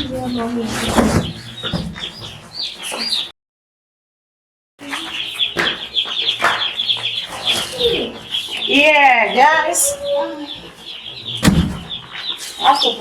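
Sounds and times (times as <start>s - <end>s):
chicks peeping: 0.0s - 3.3s, 4.8s - 13.0s
knocks: 11.4s - 12.0s.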